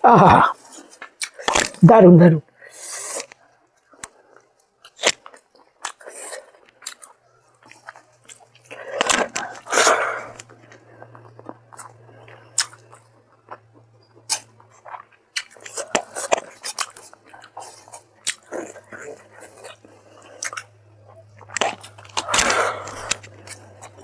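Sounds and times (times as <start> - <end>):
chewing food: 0.4 - 1.8, 2.8 - 24.0
mouth clicks and smacks: 1.2 - 2.0.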